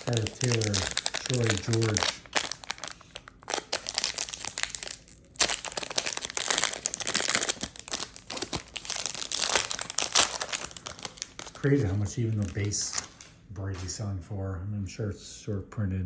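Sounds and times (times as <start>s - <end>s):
wrapper crinkling and rustling: 0.0s - 13.4s.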